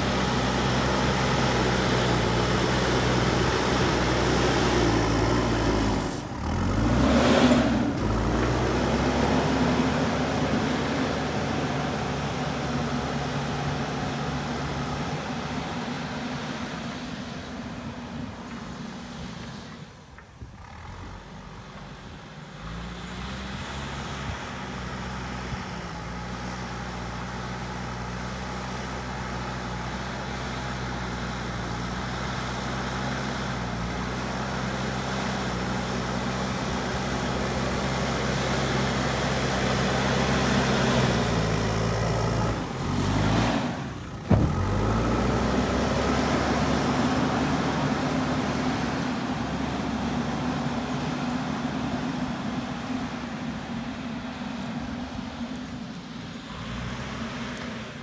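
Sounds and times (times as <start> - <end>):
diesel engine revving: 0.0 - 58.0.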